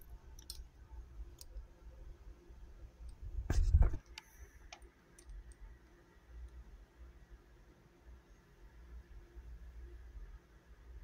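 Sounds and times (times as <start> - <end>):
light mechanical clicks: 0.0 - 1.7, 3.9 - 6.6.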